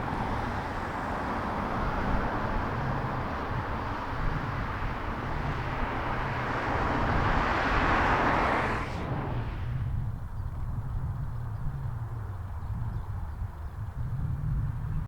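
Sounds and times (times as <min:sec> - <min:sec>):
low rumble: 0:02.2 - 0:12.2.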